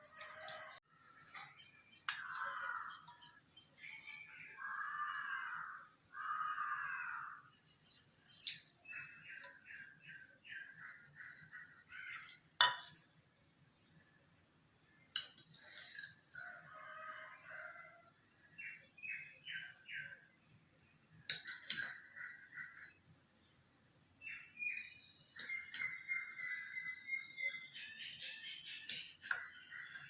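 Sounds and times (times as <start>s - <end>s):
faint bird chirps: 23.8s - 30.0s.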